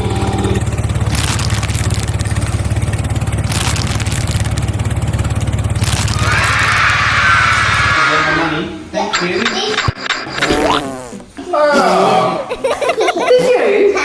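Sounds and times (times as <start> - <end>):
engine running with low pulse: 0.0 - 8.1.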